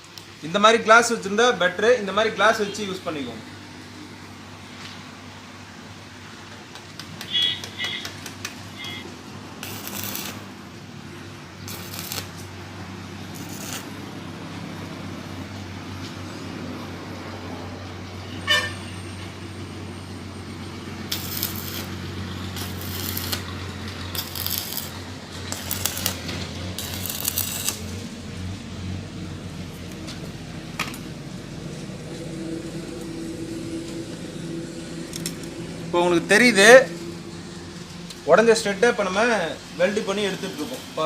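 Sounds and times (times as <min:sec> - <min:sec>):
welding arc crackling and hissing: 0:06.7 - 0:15.6, 0:20.8 - 0:28.5, 0:37.8 - 0:41.0
welding machine hum: 0:07.3 - 0:16.9, 0:19.5 - 0:30.8, 0:31.7 - 0:35.9.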